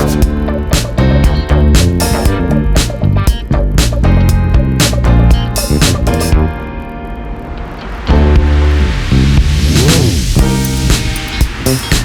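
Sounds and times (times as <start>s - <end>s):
funky groove with guitar and bass: 0.0s - 6.6s.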